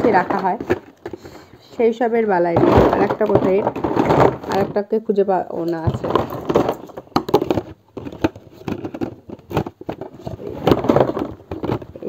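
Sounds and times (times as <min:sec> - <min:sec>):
plastic toy pieces clattering: 0:00.0 - 0:01.2, 0:02.4 - 0:04.8, 0:05.7 - 0:12.0.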